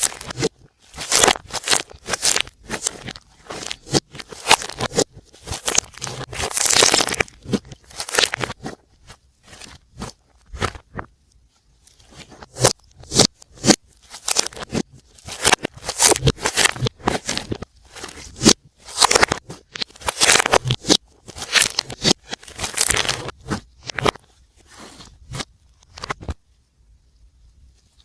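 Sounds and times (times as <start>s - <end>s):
slime popping and crackling: 0.0s - 8.8s, 12.1s - 24.2s.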